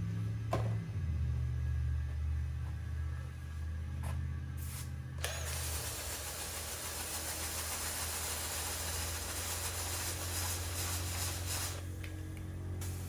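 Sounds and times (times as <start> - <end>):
low steady hum: 0.0 - 7.0
loud steady hiss: 4.6 - 11.9, 12.7 - 13.0.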